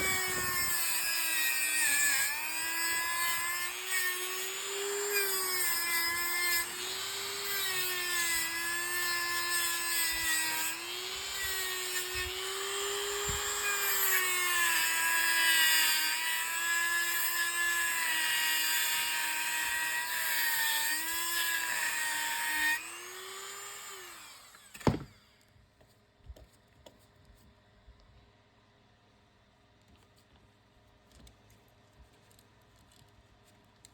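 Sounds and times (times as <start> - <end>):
power tool whining: 0.0 - 25.4.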